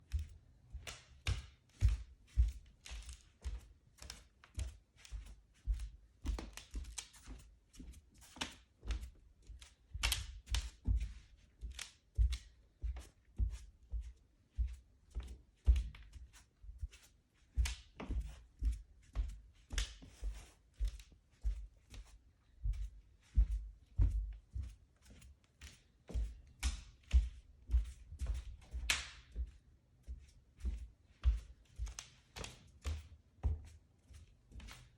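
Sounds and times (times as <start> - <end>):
footsteps thudding on floor: 17.6 - 24.8, 26.1 - 33.7.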